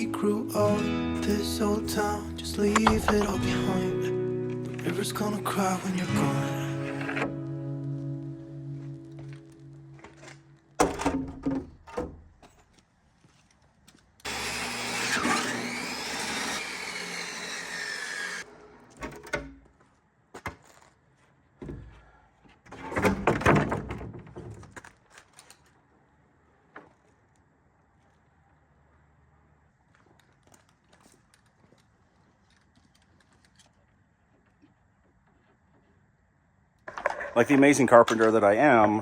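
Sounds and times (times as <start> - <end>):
power tool whining: 2.6 - 7.5, 14.3 - 19.0
sharp knocks: 2.8 - 3.5
clatter of wood or tools: 36.9 - 38.4.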